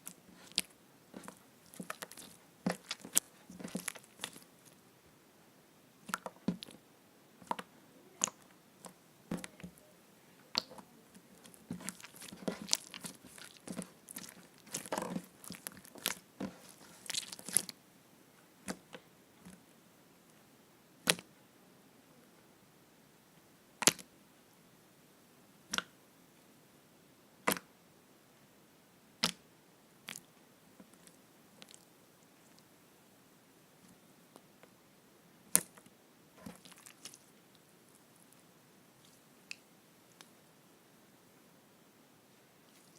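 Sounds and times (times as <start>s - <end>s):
slime squeezed and stretched: 0.4s - 4.5s, 11.4s - 17.7s, 36.4s - 37.3s.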